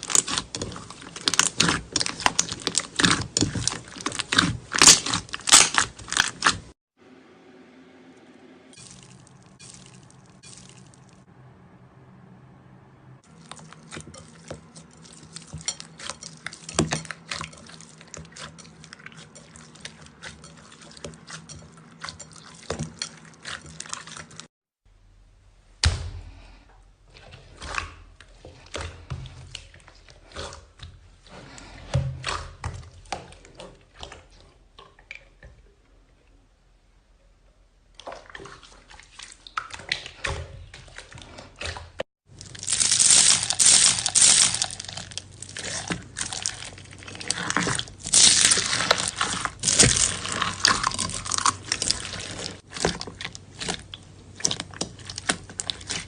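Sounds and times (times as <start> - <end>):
slime squeezed with sticky pops: 42.5 - 45.1.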